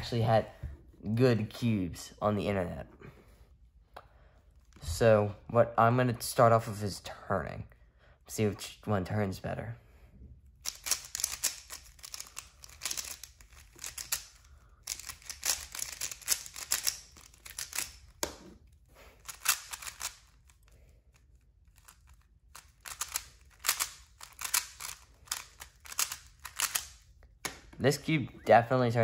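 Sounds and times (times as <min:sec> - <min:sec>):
puzzle cube clicking as turned: 0:10.6 - 0:18.4, 0:19.2 - 0:20.8, 0:21.7 - 0:27.6.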